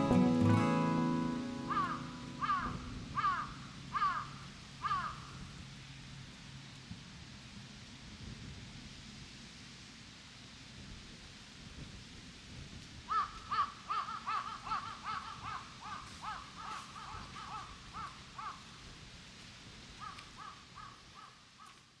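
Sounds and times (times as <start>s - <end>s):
crow cawing: 1.7s - 5.5s, 13.1s - 18.8s, 20.0s - 21.8s.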